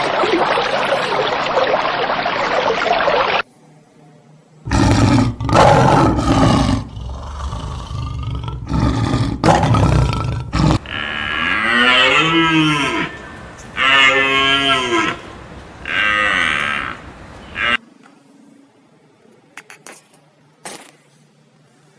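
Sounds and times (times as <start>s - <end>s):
long mooing calls: 4.7s - 17.8s
rough rasping roars: 4.7s - 17.8s.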